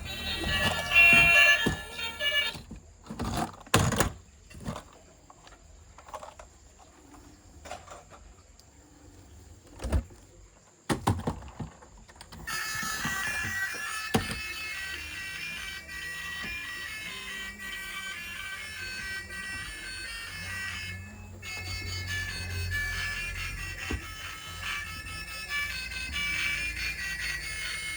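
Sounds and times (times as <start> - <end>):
plastic toys clicking and knocking: 0.1 - 6.6, 10.9 - 22.5.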